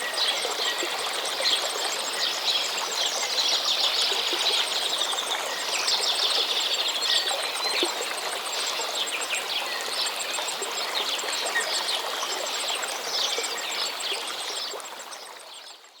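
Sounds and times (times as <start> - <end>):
stream water running: 0.0 - 16.0.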